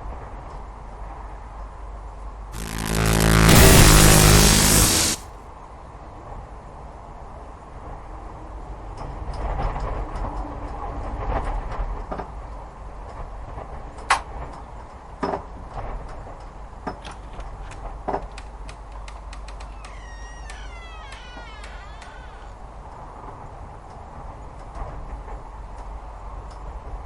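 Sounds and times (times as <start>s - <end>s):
low rumble: 2.6s - 5.2s.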